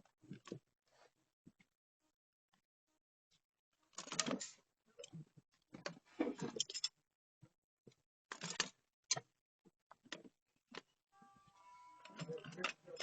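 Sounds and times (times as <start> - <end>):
tools rustling and clattering: 5.8 - 7.0.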